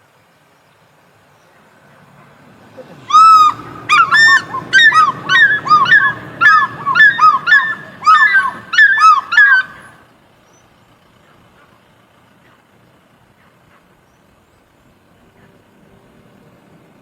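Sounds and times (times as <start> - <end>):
honking bird calls: 2.7 - 10.0.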